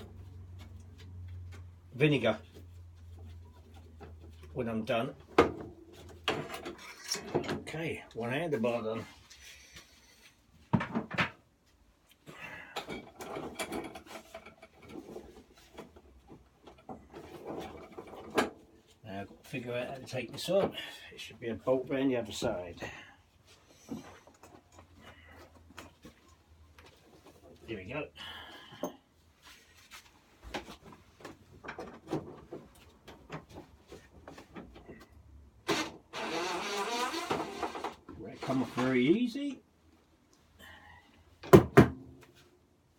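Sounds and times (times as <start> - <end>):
metal parts clinking and scraping: 6.4 - 7.3
sharp knocks on metal: 41.5 - 42.2.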